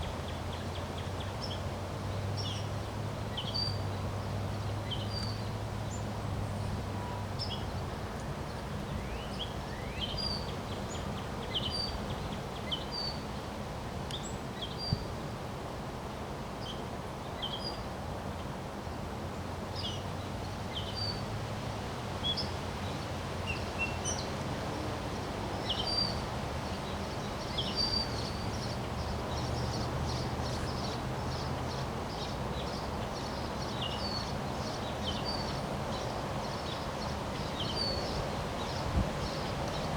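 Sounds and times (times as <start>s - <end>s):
wind rumbling on microphone: 24.5s - 39.9s
small birds chirping: 25.6s - 39.9s.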